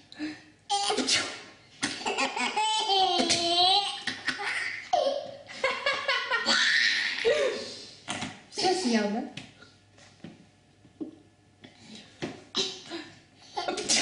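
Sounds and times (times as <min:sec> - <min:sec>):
baby laughing: 0:01.8 - 0:07.6.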